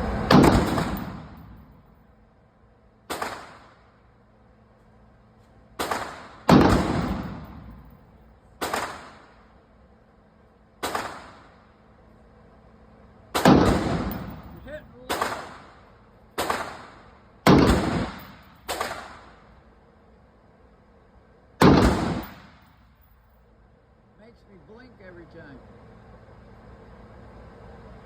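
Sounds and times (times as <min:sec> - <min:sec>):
rifle shots echoing: 0:00.3 - 0:01.6, 0:05.8 - 0:07.9, 0:08.6 - 0:09.3, 0:10.8 - 0:11.5, 0:13.3 - 0:19.4, 0:21.6 - 0:22.7.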